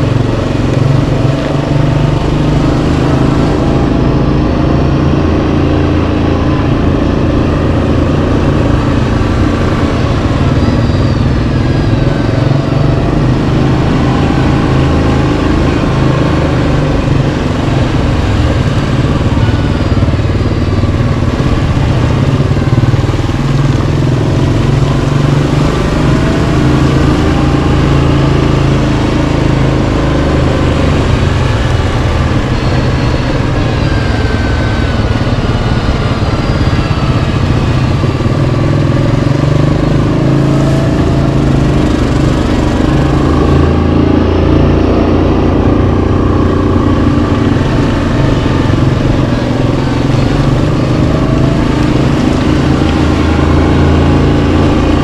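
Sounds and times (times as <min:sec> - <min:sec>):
atv engine running: 0:00.0 - 0:55.0.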